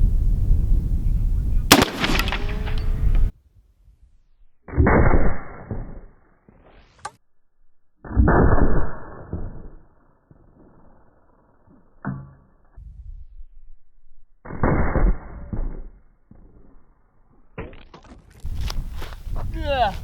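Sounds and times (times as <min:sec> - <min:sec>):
deep muffled gunshot booms: 0:01.7 - 0:03.3.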